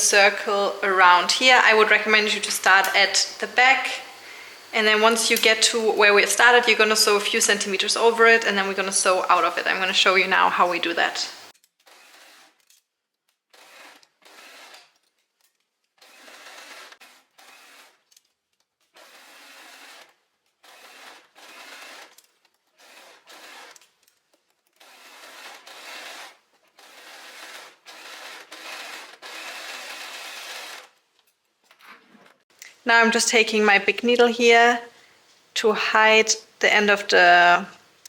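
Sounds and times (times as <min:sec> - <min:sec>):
sewing machine stitching: 0:11.8 - 0:12.7, 0:13.5 - 0:15.0, 0:16.0 - 0:18.2, 0:19.0 - 0:24.0, 0:24.7 - 0:30.9.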